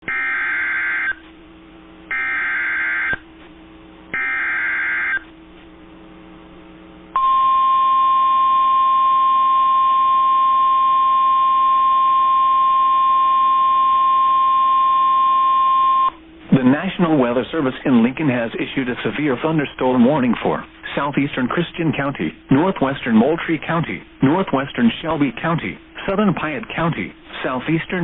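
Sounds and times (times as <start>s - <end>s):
shrill steady attention tone: 0.0s - 1.2s, 2.1s - 3.2s, 4.1s - 5.3s, 7.1s - 16.2s.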